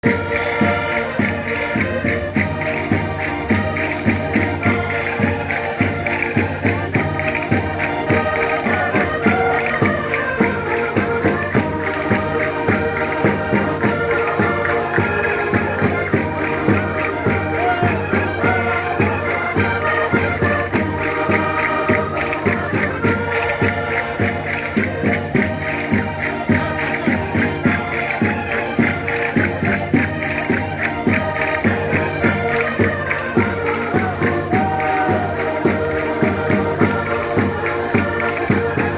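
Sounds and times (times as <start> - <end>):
concertina folk music: 0.0 - 38.9
light percussion beat: 0.0 - 38.9.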